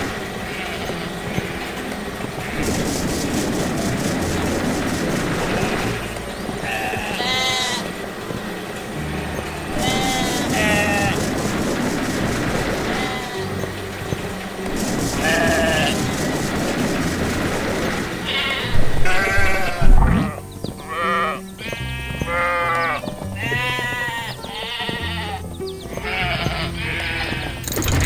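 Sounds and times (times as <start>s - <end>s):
bleat-like animal calls: 0.0s - 3.0s, 5.4s - 8.0s, 9.3s - 11.2s, 12.8s - 13.6s, 15.1s - 16.1s, 18.2s - 27.6s
background music: 0.0s - 28.0s.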